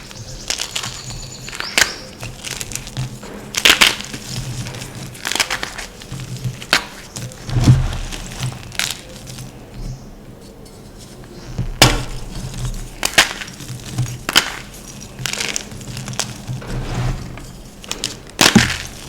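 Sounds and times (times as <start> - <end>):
chalk snapping and crackling: 0.0 - 9.8, 10.4 - 19.0
chalk crumbling: 10.4 - 19.0.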